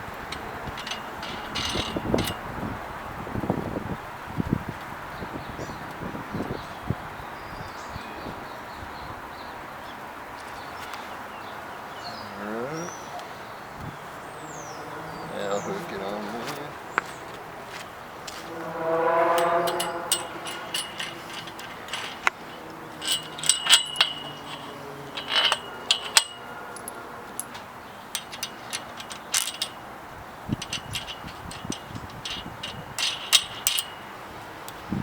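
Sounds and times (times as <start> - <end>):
metal hooks clinking: 0.0 - 2.4, 18.6 - 34.8.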